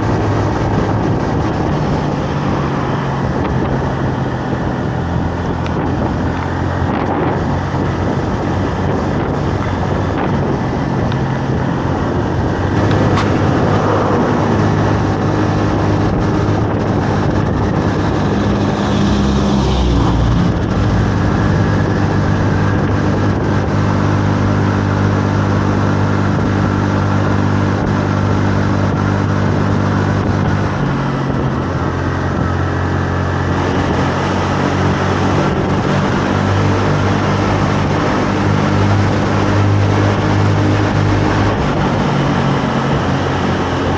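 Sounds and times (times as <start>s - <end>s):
motorcycle engine cruising: 0.0s - 43.9s
wind rushing past microphone: 0.0s - 43.9s
sharp click: 12.8s - 15.2s.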